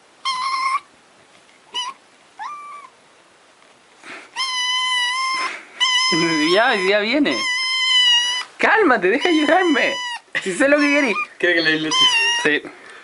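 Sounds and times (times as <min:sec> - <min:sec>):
cat meowing: 0:00.2 - 0:00.9, 0:01.7 - 0:03.0, 0:04.4 - 0:08.6, 0:09.2 - 0:12.6.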